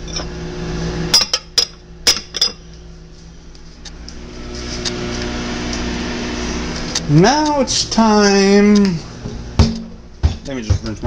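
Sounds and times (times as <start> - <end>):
low steady hum: 0.0 - 11.0
dishes clinking: 1.1 - 2.7.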